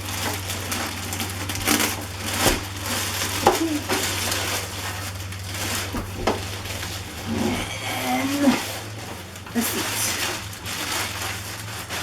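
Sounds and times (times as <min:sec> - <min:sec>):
cardboard rustling and scraping: 0:00.0 - 0:12.0.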